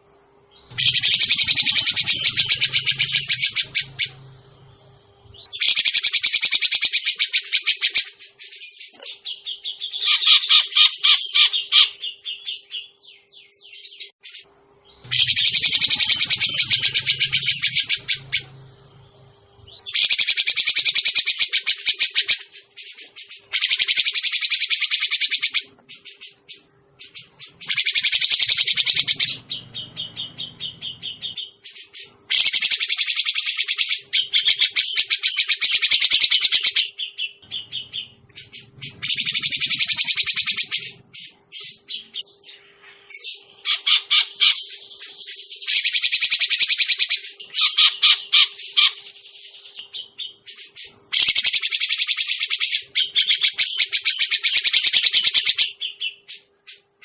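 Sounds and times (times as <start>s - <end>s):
faint steady hum: 0.0s - 57.0s
bird rattling chattering calls: 0.7s - 4.2s, 15.1s - 18.6s, 19.9s - 22.5s, 27.1s - 31.4s, 38.4s - 41.1s, 51.1s - 55.7s.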